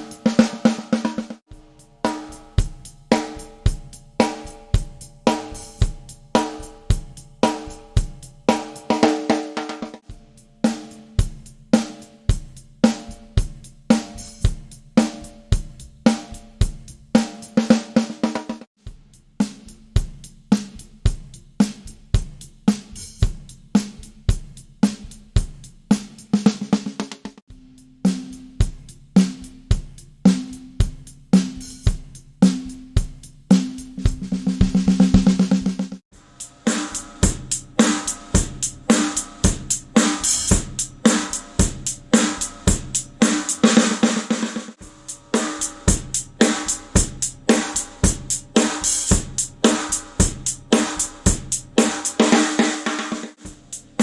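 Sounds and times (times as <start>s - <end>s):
bass drum: 0.0s - 17.6s, 18.3s - 26.6s, 27.5s - 36.0s, 45.9s - 47.4s
hi-hat: 0.0s - 18.2s, 18.8s - 26.8s, 27.5s - 43.8s, 44.8s - 52.3s, 53.4s - 54.0s
ringing cymbals: 1.5s - 9.3s, 10.0s - 17.6s, 36.1s - 43.8s
snare drum crack: 29.2s - 36.0s, 42.1s - 53.6s
snare roll: 51.8s - 53.5s.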